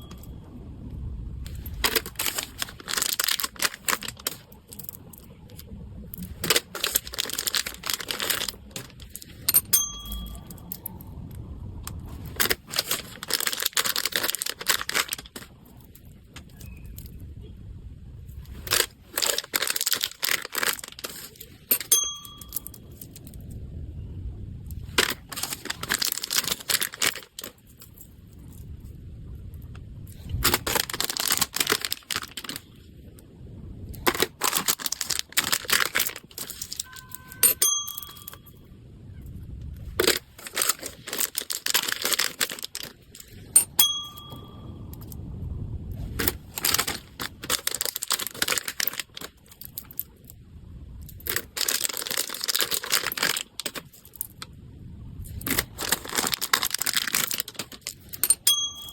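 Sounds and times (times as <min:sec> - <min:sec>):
packaging tearing: 0:01.5 - 0:04.6, 0:06.2 - 0:09.4, 0:12.3 - 0:15.6, 0:18.5 - 0:21.7, 0:24.9 - 0:27.6, 0:30.2 - 0:32.6, 0:34.0 - 0:36.9, 0:40.0 - 0:43.5, 0:46.2 - 0:49.8, 0:51.3 - 0:54.4, 0:55.3 - 0:58.2
packaging rustling and crinkling: 0:01.5 - 0:10.5, 0:11.9 - 0:17.1, 0:18.4 - 0:23.4, 0:24.7 - 0:28.0, 0:30.1 - 0:32.9, 0:33.9 - 0:38.4, 0:39.8 - 0:45.2, 0:46.0 - 0:50.3, 0:51.0 - 0:54.5, 0:55.2 - 0:58.9.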